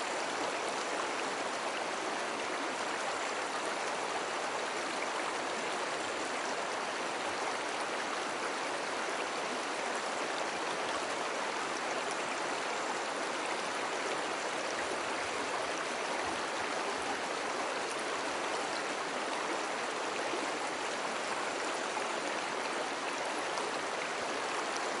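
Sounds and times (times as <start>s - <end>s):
river water flowing over stones: 0.0s - 25.0s.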